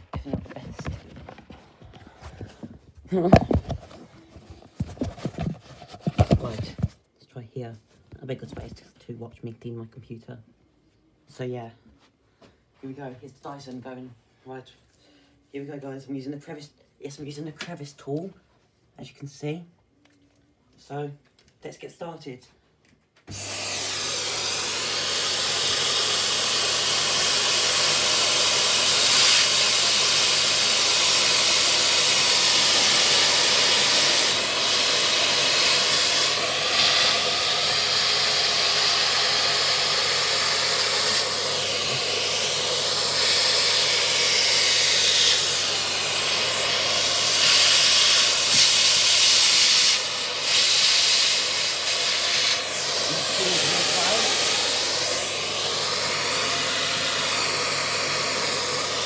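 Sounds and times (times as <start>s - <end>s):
vacuum cleaner running: 0.0s - 7.0s, 23.3s - 59.0s.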